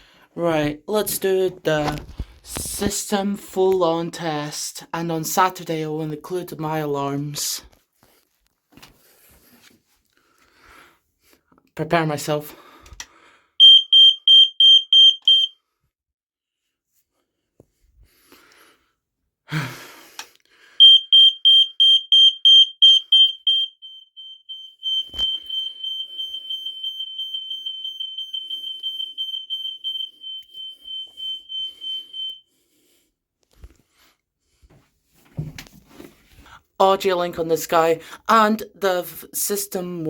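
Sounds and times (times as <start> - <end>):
smoke alarm beeping: 13.6 - 15.6, 20.8 - 32.5.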